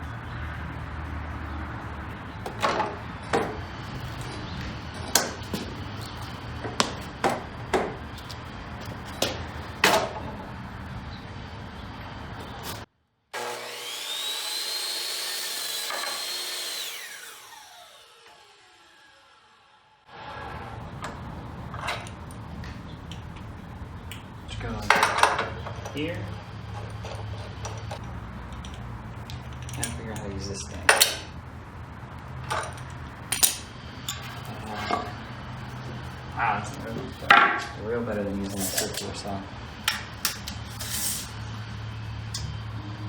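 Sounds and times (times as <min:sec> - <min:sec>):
mitre saw motor whining: 0:00.0 - 0:21.6.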